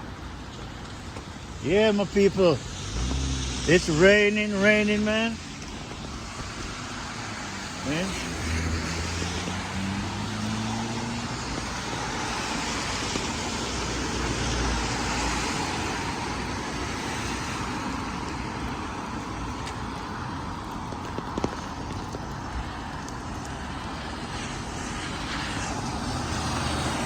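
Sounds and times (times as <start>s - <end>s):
rain: 0.0s - 27.0s
tyres hissing on wet road: 0.0s - 27.0s
vehicle engine rumbling: 1.0s - 22.2s.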